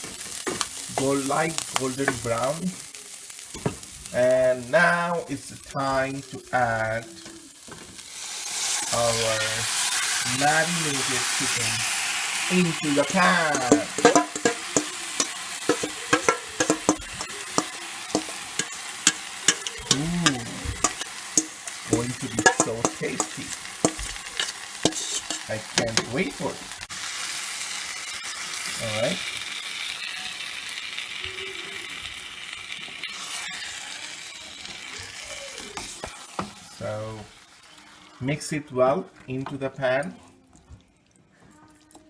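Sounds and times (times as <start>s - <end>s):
chicken frying in hot oil: 0.0s - 39.6s
utensil scraping against pan: 8.0s - 26.5s.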